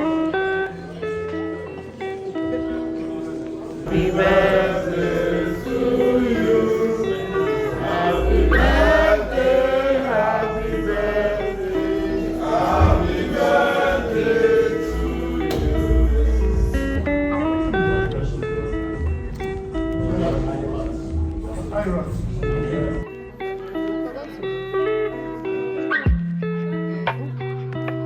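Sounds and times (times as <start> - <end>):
gospel choir singing: 3.8 - 17.2
sustained chords and bass: 3.8 - 23.1.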